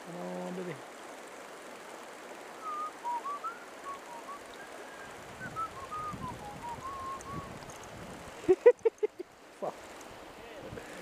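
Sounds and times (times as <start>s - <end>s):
river rushing: 0.0s - 8.6s, 9.3s - 11.0s
whistled sliding notes: 2.6s - 7.6s.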